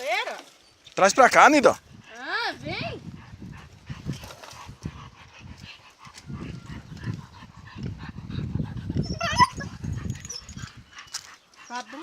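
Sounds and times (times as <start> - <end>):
dogs breathing hard: 1.8 - 12.0
dogs moving about: 8.9 - 12.0
dog whining: 9.0 - 10.9.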